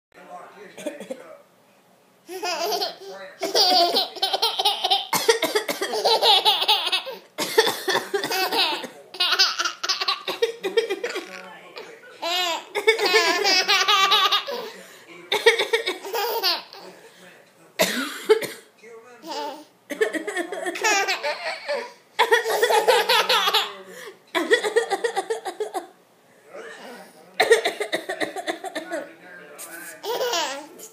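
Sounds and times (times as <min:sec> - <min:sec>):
baby belly-laughing: 0:02.3 - 0:07.3, 0:08.2 - 0:11.5, 0:12.2 - 0:14.7, 0:15.3 - 0:16.9, 0:19.2 - 0:23.8, 0:30.0 - 0:30.9.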